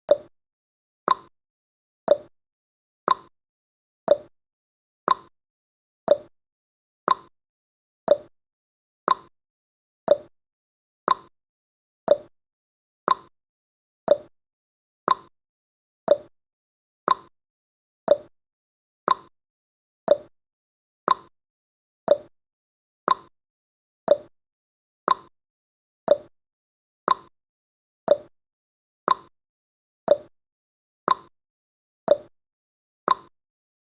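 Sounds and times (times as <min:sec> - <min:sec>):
timer ticking: 0:00.1 - 0:00.3, 0:01.1 - 0:01.3, 0:02.1 - 0:02.3, 0:03.1 - 0:03.3, 0:04.1 - 0:04.3, 0:05.1 - 0:05.3, 0:06.1 - 0:06.3, 0:07.1 - 0:07.3, 0:08.1 - 0:08.3, 0:09.1 - 0:09.3, 0:10.1 - 0:10.3, 0:11.1 - 0:11.3, 0:12.1 - 0:12.3, 0:13.1 - 0:13.3, 0:14.1 - 0:14.3, 0:15.1 - 0:15.3, 0:16.1 - 0:16.3, 0:17.1 - 0:17.3, 0:18.1 - 0:18.3, 0:19.1 - 0:19.3, 0:20.1 - 0:20.3, 0:21.1 - 0:21.3, 0:22.1 - 0:22.3, 0:23.1 - 0:23.3, 0:24.1 - 0:24.3, 0:25.1 - 0:25.3, 0:26.1 - 0:26.3, 0:27.1 - 0:27.3, 0:28.1 - 0:28.3, 0:29.1 - 0:29.3, 0:30.1 - 0:30.3, 0:31.1 - 0:31.3, 0:32.1 - 0:32.3, 0:33.1 - 0:33.3.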